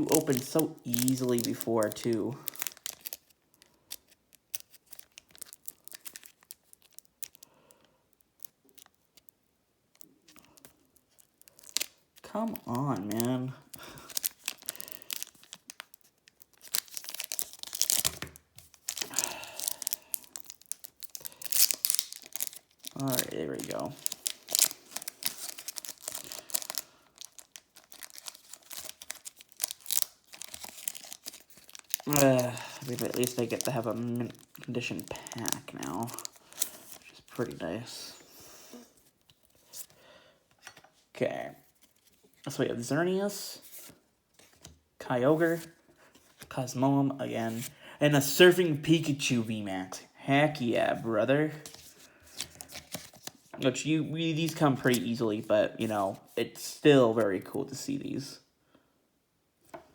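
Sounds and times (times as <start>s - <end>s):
foil wrapper crinkling: 0.0s - 9.3s, 10.0s - 37.6s, 51.7s - 53.5s.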